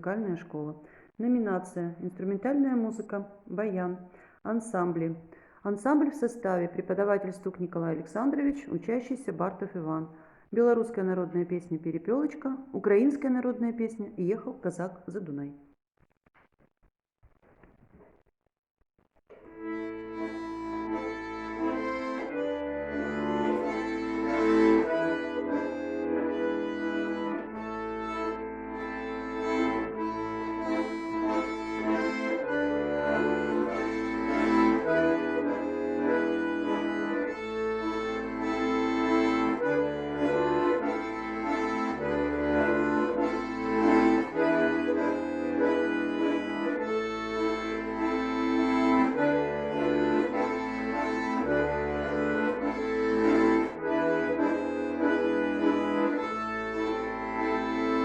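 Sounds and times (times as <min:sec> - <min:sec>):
button accordions playing folk tune: 0:19.3 - 0:58.0.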